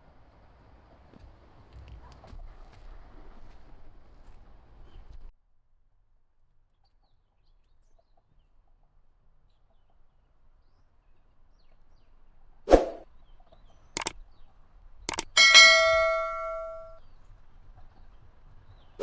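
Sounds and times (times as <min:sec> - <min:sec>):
ringing metal clang: 0:15.1 - 0:17.0
short sharp clicks: 0:15.1 - 0:17.0.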